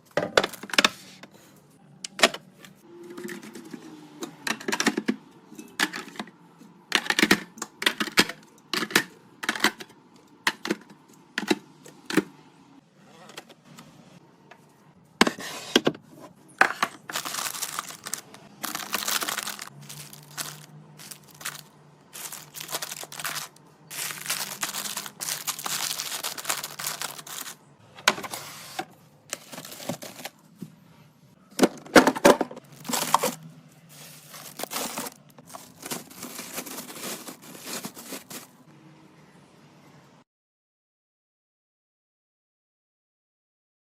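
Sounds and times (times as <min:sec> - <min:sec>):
plastic wrap crinkling: 0:17.0 - 0:27.6, 0:29.3 - 0:30.4, 0:32.6 - 0:38.6.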